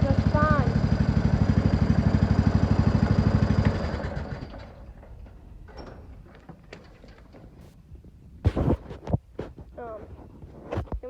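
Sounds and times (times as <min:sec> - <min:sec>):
lawnmower engine running: 0:00.0 - 0:07.2.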